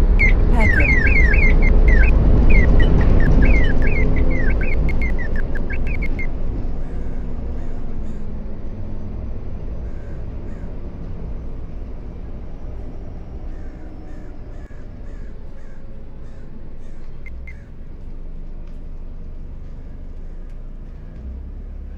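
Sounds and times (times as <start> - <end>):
bus engine rumbling: 0.0 - 21.9
faint short squawking calls: 0.2 - 8.2.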